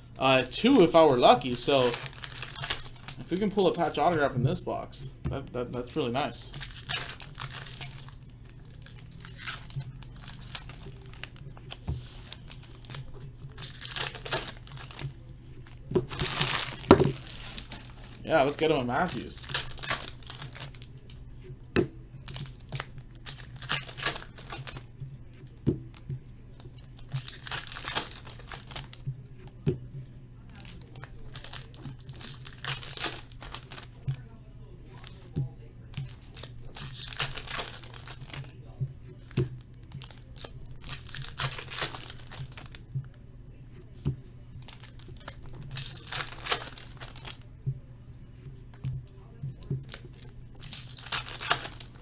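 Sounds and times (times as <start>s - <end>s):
foil wrappers tearing and crinkling: 0.2s - 4.4s, 5.6s - 21.1s, 22.2s - 24.9s, 26.6s - 29.0s, 30.5s - 34.2s, 36.0s - 38.6s, 39.2s - 43.2s, 44.6s - 47.5s, 49.8s - 52.0s.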